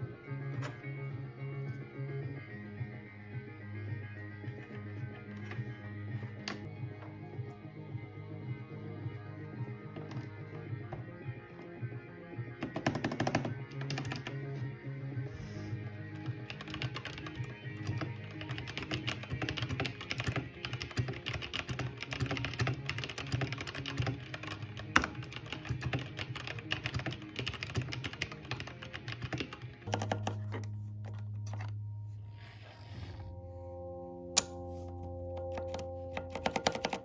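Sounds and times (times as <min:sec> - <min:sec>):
background music: 0:00.0 - 0:37.0
fast keyboard typing: 0:12.6 - 0:14.4, 0:16.1 - 0:31.7, 0:35.4 - 0:37.0.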